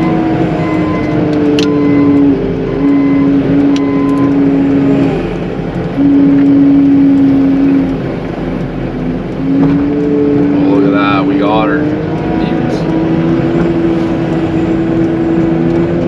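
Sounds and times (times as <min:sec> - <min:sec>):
reversing alarm beeps: 0:00.0 - 0:04.5
diesel engine under load: 0:00.0 - 0:16.0.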